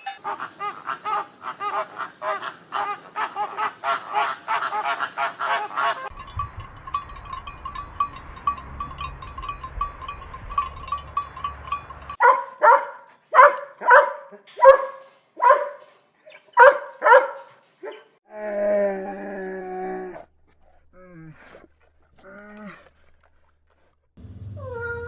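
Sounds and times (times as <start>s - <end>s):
drawn-out pitched call: 0.1s - 6.2s
dog barking: 12.2s - 15.9s, 16.5s - 18.1s.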